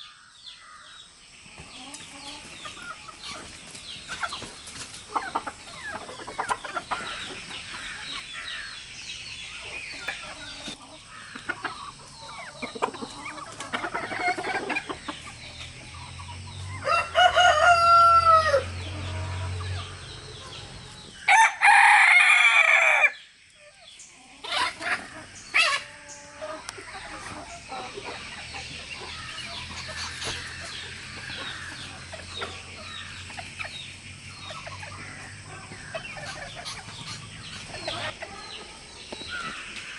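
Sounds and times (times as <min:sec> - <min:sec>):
hens clucking: 0:01.4 - 0:21.5, 0:22.1 - 0:39.9
rooster crowing: 0:16.8 - 0:19.6, 0:21.3 - 0:23.2.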